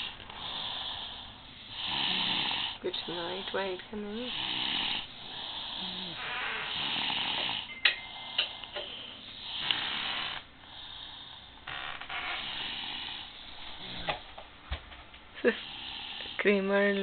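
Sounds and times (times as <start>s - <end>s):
person snoring: 0.0s - 8.8s, 9.4s - 14.2s.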